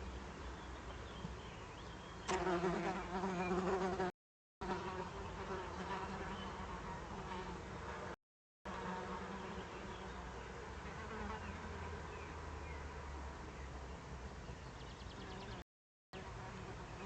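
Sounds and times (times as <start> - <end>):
fly buzzing: 2.3 - 9.6.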